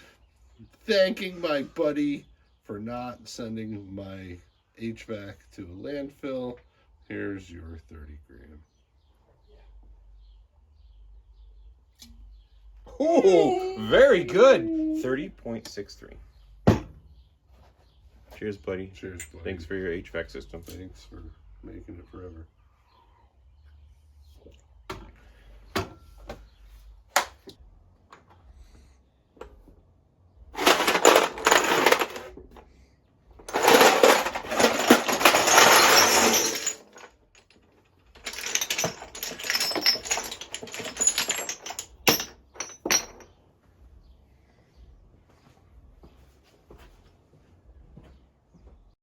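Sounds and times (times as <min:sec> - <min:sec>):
rattling clatter: 0:30.6 - 0:32.3, 0:33.4 - 0:43.3.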